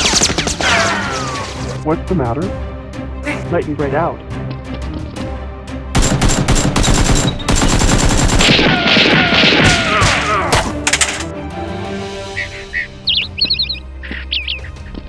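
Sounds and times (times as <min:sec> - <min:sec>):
machine-gun fire: 0:06.0 - 0:09.9.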